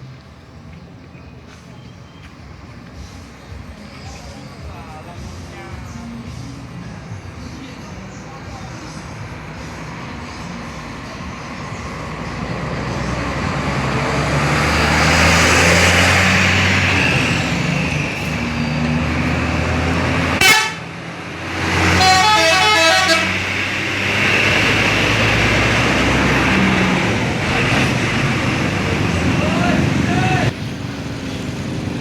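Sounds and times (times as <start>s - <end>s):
bus diesel engine running: 0.0s - 32.0s
air horn playing alternating tones: 20.4s - 21.0s, 21.8s - 23.6s.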